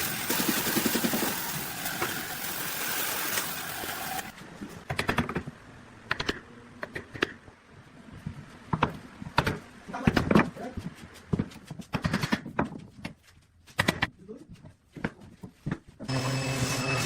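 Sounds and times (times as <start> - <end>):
power tool running: 0.0 - 4.4, 16.1 - 17.0.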